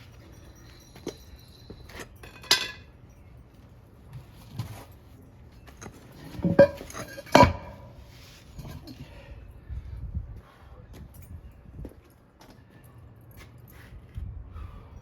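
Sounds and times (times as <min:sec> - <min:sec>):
pry bars clanking on metal: 0:06.1 - 0:08.0.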